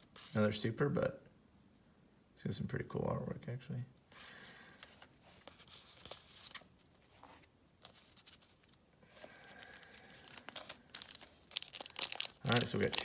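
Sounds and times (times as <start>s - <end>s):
foil wrapper crinkling and tearing: 9.3s - 13.0s.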